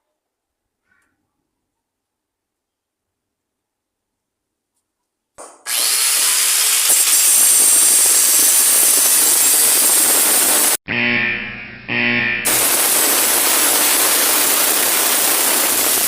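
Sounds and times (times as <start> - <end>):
angle grinder grinding: 5.7 - 10.8, 12.4 - 16.0.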